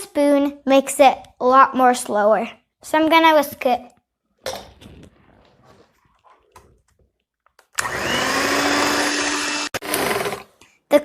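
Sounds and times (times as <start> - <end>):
electric whisk humming: 7.8 - 10.4.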